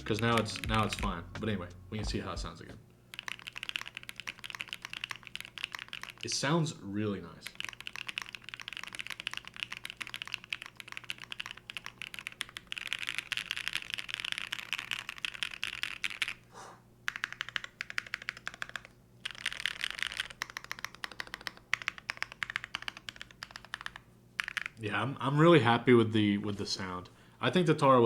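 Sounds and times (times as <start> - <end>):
mechanical keyboard keystrokes clacking: 3.2 - 6.2, 7.5 - 16.3, 17.1 - 24.8.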